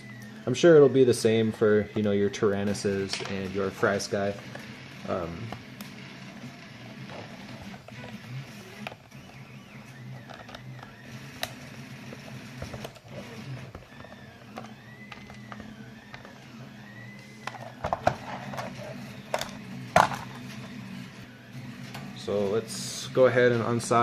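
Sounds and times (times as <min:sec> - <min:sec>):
plastic squeaks: 0:06.9 - 0:20.7.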